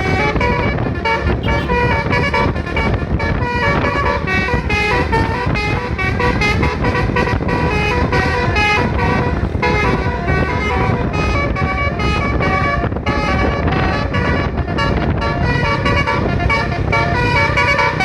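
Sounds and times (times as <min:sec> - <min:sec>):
vehicle horn playing melody: 0:00.0 - 0:07.8.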